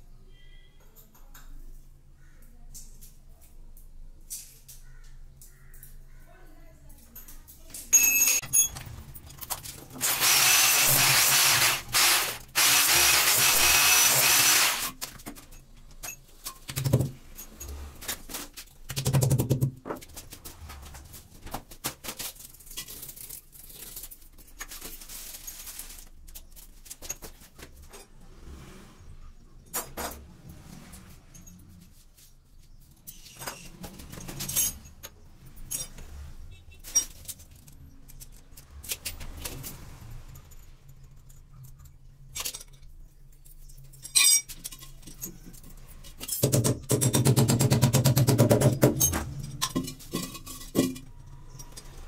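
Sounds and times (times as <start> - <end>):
power drill running: 9.9 - 15.0.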